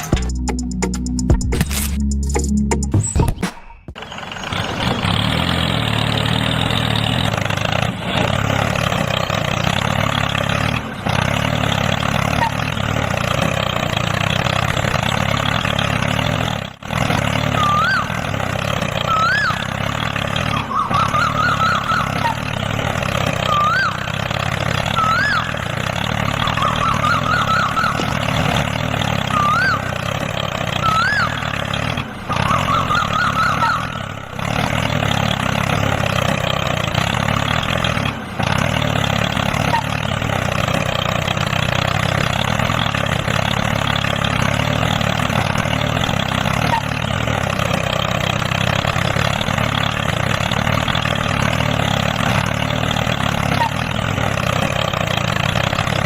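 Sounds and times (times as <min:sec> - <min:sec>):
tractor engine idling: 0:00.0 - 0:56.0
high warbling chirps: 0:20.4 - 0:22.6, 0:24.9 - 0:30.0, 0:30.7 - 0:34.2.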